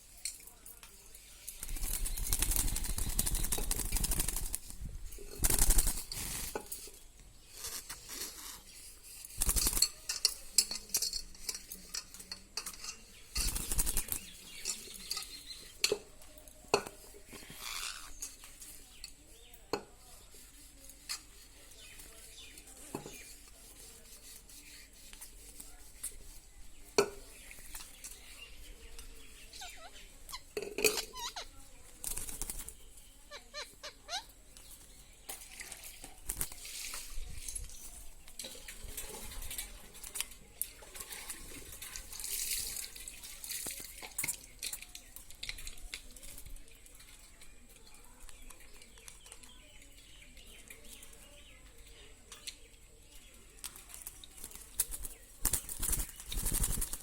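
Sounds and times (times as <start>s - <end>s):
clicks and clinks against dish: 9.8s - 13.5s.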